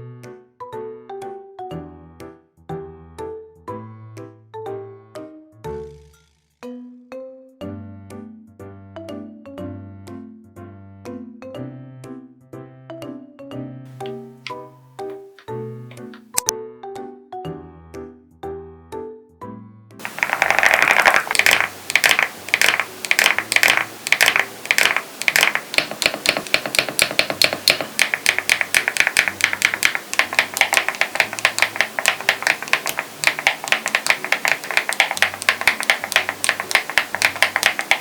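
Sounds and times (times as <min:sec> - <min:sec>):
mechanical keyboard typing: 0:20.0 - 0:38.0.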